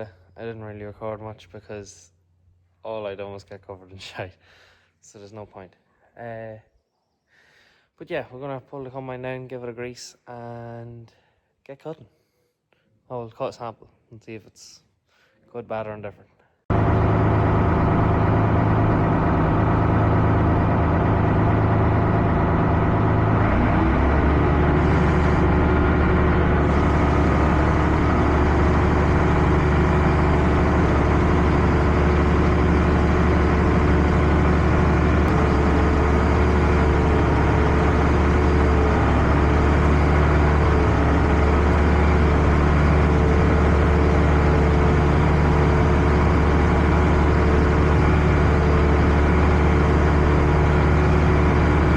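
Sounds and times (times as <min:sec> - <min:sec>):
combine harvester engine running: 0:16.7 - 0:51.9.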